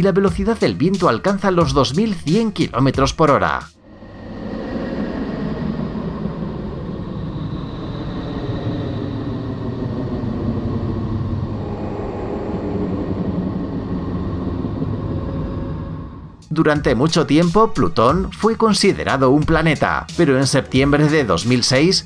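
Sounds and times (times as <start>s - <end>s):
faint sustained tones: 3.8s - 17.2s
low rumbling drone: 3.8s - 21.7s.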